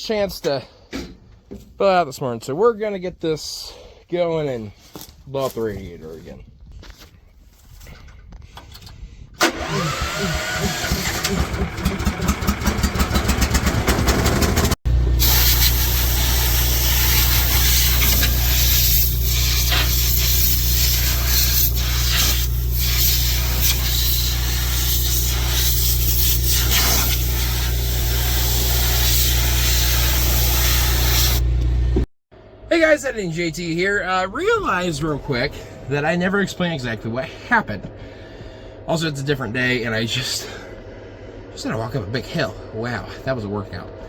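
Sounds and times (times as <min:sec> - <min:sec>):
truck engine cranking and running: 0:08.5 - 0:32.0.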